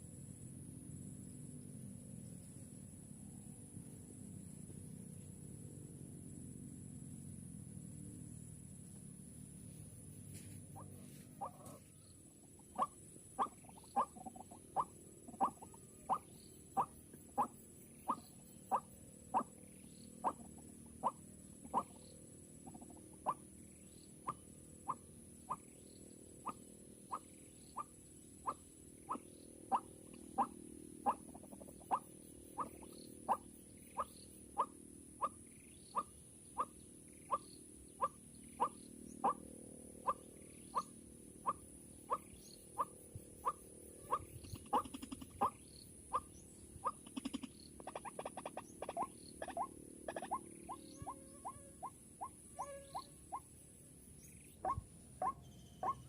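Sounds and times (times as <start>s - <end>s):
waterhen calls: 12.7s - 19.5s, 42.8s - 53.4s.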